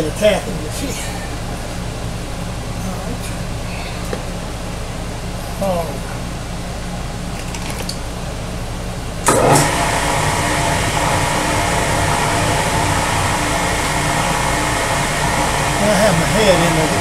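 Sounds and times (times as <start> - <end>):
low hum: 8.0 - 17.0
milling machine running: 9.2 - 17.0.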